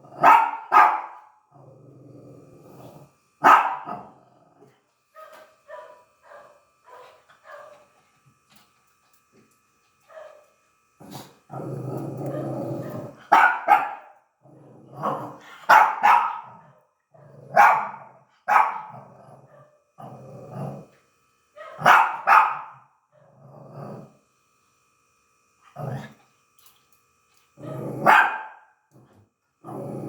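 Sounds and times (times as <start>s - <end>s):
dog barking sharply: 0.2s - 1.2s, 3.4s - 3.8s, 13.3s - 14.1s
dog growling: 1.5s - 3.2s, 11.0s - 13.3s, 14.4s - 15.7s, 16.4s - 18.0s, 18.8s - 21.0s, 23.2s - 24.2s, 25.7s - 26.3s, 27.6s - 28.2s, 28.9s - 30.0s.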